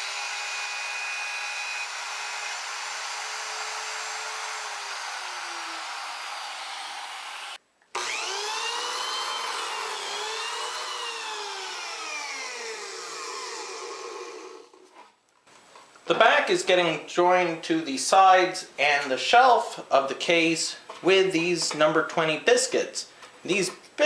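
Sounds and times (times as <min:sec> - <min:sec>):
router cutting wood: 0:00.0 - 0:14.8.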